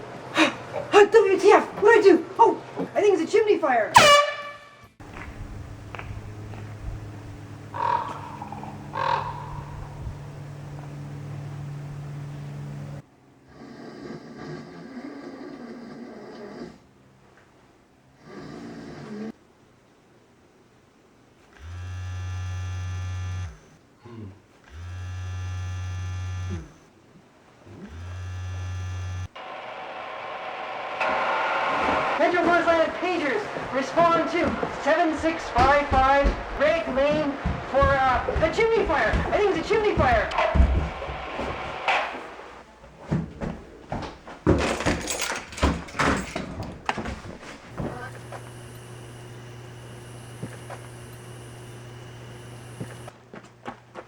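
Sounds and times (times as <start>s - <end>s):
steady low hum: 5.0s - 13.0s, 47.4s - 53.2s
knocks bangs and clatter: 32.3s - 42.4s, 43.2s - 47.7s
pager buzzing: 47.7s - 53.1s.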